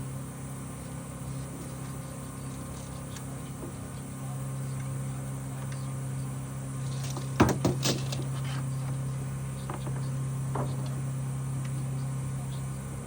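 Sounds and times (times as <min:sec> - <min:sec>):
generator humming: 0:00.0 - 0:13.0
wooden boards knocking and clattering: 0:07.0 - 0:08.3, 0:09.6 - 0:10.9.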